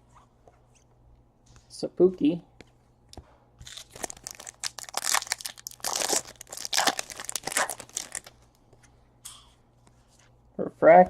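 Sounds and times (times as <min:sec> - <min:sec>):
card pack wrapper crinkling: 0:03.6 - 0:08.5.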